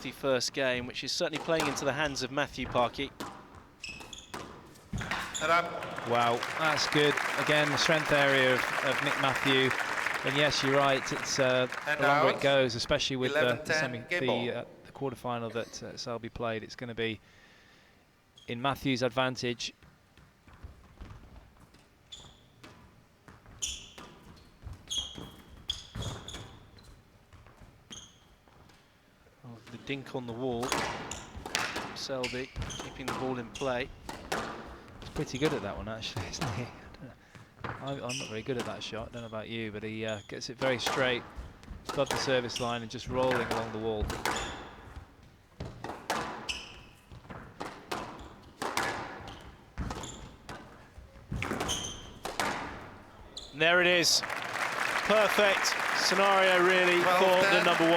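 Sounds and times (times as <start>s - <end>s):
shoes squeaking on court floor: 0.7s - 15.9s, 19.7s - 57.9s
squash ball hitting walls: 32.6s - 35.6s, 40.6s - 53.1s.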